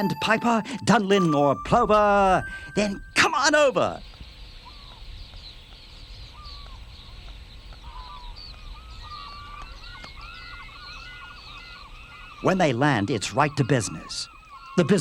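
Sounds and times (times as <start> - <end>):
flock of shorebirds chirping: 4.2 - 15.0.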